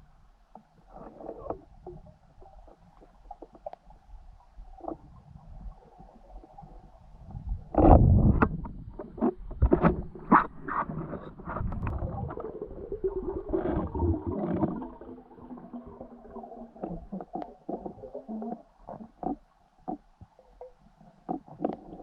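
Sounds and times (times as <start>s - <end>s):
underwater gurgling: 0.0s - 22.0s
underwater knocks and clicks: 0.5s - 22.0s.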